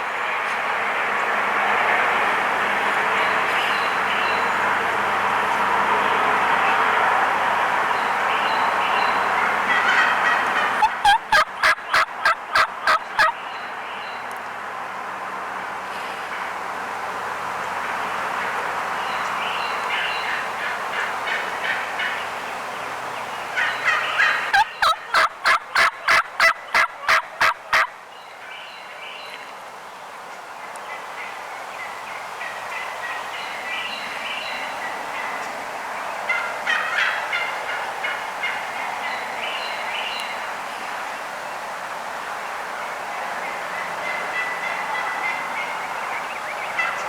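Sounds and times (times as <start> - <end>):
turkeys yelping: 9.6 - 13.4, 23.6 - 27.9, 36.3 - 38.6, 44.0 - 47.0.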